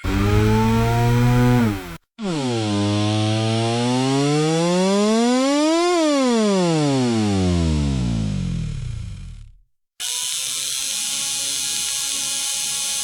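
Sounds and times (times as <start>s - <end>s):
buzzing engine revving: 0.0s - 9.5s.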